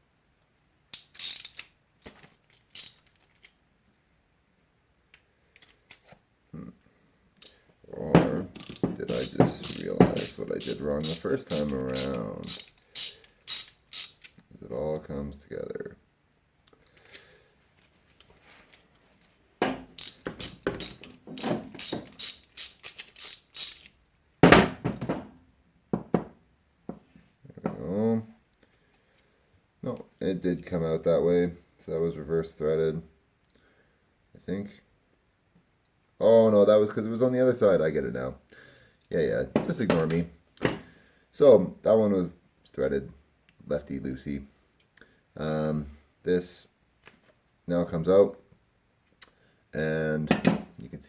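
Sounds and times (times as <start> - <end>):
ratchet clicking: 0.9 - 1.7, 2.5 - 3.6, 8.6 - 14.4, 20.0 - 24.0.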